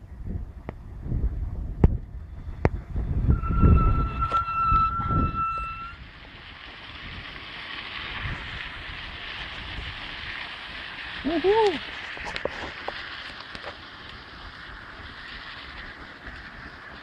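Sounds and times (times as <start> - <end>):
wind hiss on microphone: 0.0 - 17.0
high squeal: 3.2 - 6.0.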